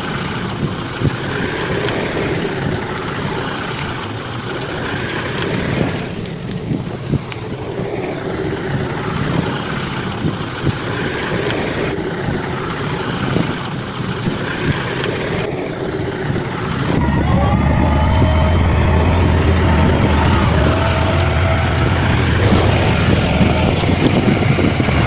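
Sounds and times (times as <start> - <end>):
bulldozer diesel engine running: 15.6 - 25.0.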